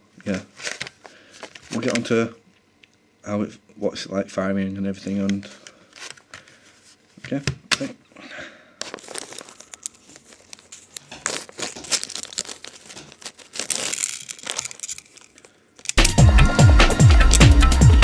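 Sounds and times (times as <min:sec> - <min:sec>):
crinkling and rustling: 0:00.2 - 0:02.2, 0:05.1 - 0:07.4, 0:08.8 - 0:16.0
electronic music with steady beat: 0:16.0 - 0:18.0.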